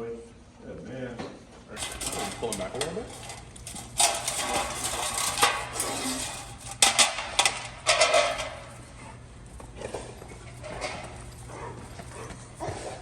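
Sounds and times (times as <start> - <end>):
metal clinking and rattling: 1.8 - 9.0.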